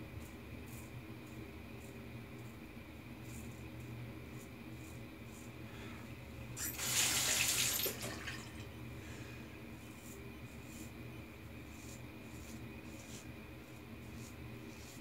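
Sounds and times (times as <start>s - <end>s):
tap water running: 6.6s - 8.8s.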